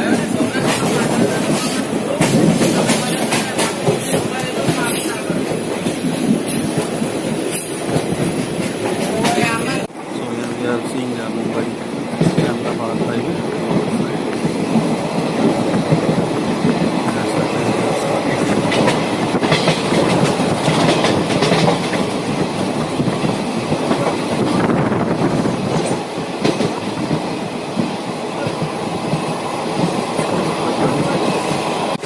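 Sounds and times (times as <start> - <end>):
train wheels rumbling on rails: 0.0 - 32.0
wheels clicking over rail joints: 18.3 - 24.2.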